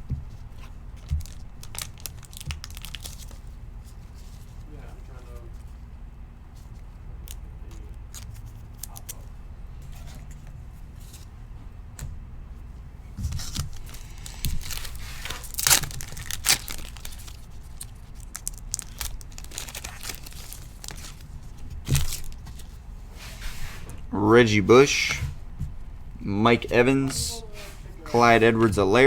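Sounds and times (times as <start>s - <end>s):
cards clicking and rustling: 0.6s - 3.4s, 7.2s - 9.3s, 13.3s - 22.7s
card pack wrapper tearing: 1.3s - 3.4s, 13.4s - 21.3s, 21.9s - 22.4s.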